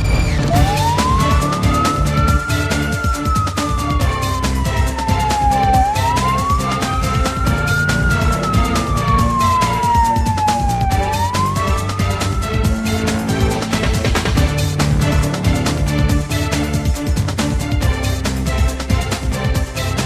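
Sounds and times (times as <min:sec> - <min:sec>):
background music with a beat: 0:00.1 - 0:20.0
fire alarm siren wailing: 0:00.4 - 0:14.5.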